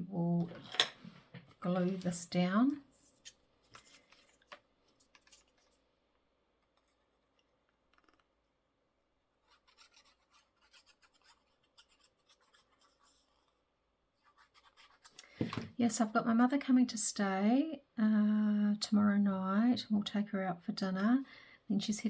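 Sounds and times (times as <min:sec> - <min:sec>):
paper scratching and rubbing: 0:09.4 - 0:13.6, 0:14.2 - 0:15.2.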